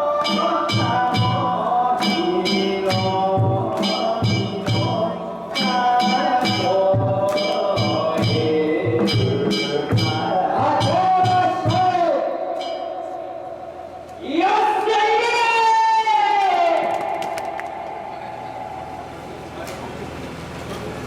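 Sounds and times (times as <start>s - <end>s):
wavering melody: 0.0s - 14.1s, 17.2s - 19.6s
taiko drum beats: 0.1s - 13.2s
metal hand gongs clanging: 12.6s - 13.3s.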